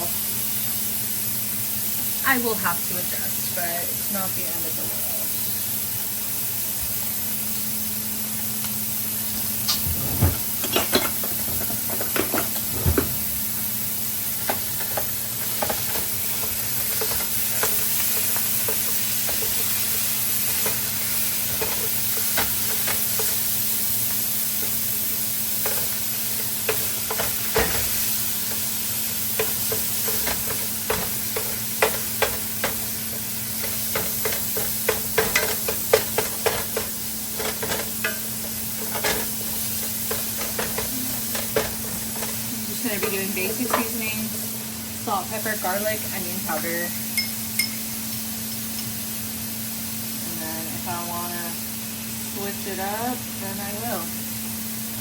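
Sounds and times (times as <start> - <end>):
meat sizzling in frying pan: 0.0 - 55.0
utensil scraping pan: 14.4 - 23.5, 25.5 - 44.4.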